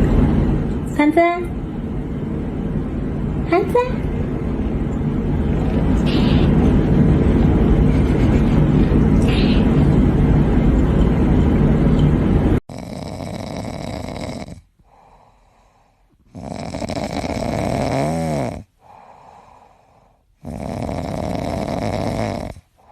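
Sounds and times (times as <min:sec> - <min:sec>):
loud steady noise: 0:00.0 - 0:12.6
cat snoring: 0:12.7 - 0:19.8, 0:20.4 - 0:22.9.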